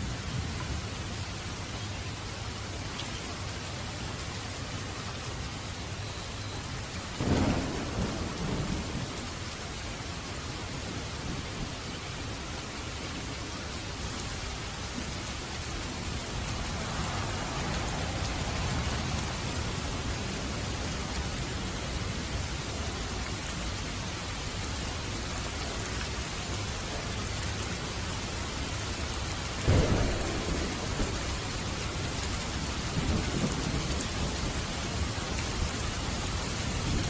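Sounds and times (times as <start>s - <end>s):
heavy rain: 0.0s - 37.0s
loud thunderclap: 7.2s - 9.3s, 29.6s - 32.1s, 32.8s - 34.6s
thunder rumbling: 7.2s - 12.4s, 14.3s - 23.7s, 29.0s - 37.0s.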